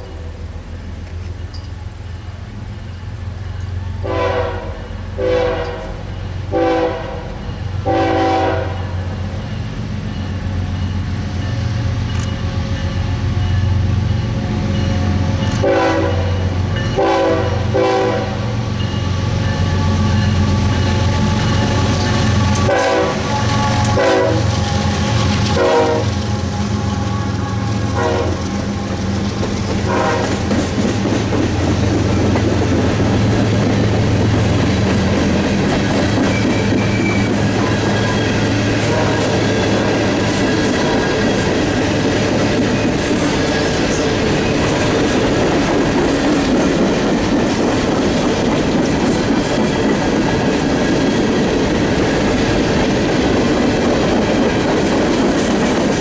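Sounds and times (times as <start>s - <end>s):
freight train rumbling past: 0.0s - 56.0s
locomotive air horn blasts: 4.0s - 9.0s, 15.6s - 18.5s, 20.9s - 28.6s, 29.9s - 30.4s, 38.8s - 39.4s.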